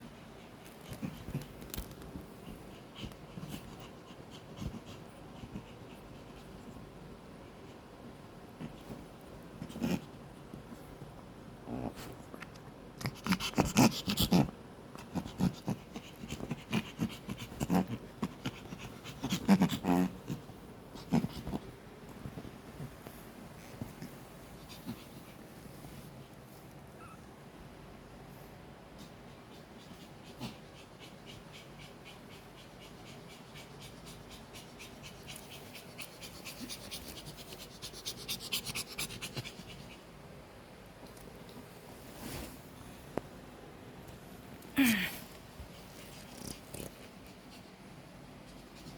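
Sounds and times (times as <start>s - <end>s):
dog panting and huffing: 29.0s - 40.1s.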